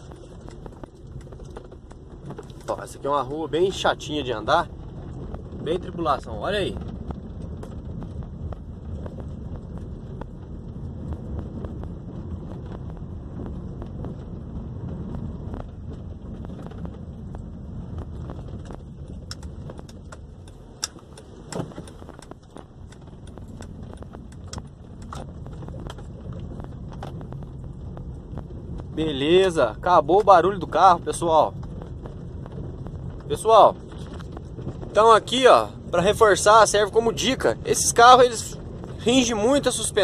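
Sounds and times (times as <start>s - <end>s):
road and tyre rumble: 0.0s - 40.0s
light clicks and rattles: 18.0s - 28.5s.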